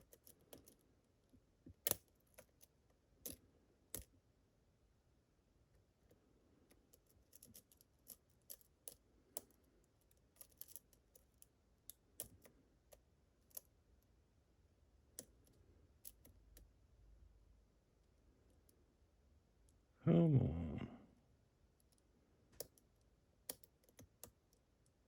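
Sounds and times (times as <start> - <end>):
lock pick clicking and scraping: 6.7 - 13.7.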